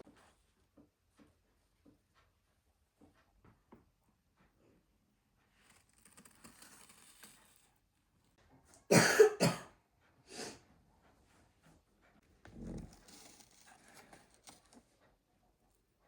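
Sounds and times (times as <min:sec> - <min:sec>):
person coughing: 0:08.9 - 0:09.7.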